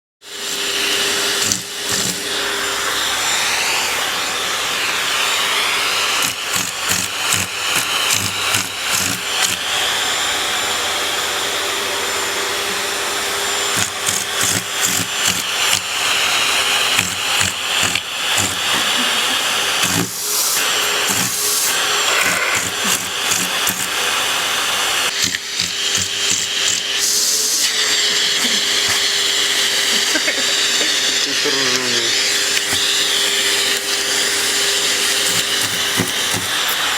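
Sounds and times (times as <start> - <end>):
vacuum cleaner motor running: 0.2 - 36.9.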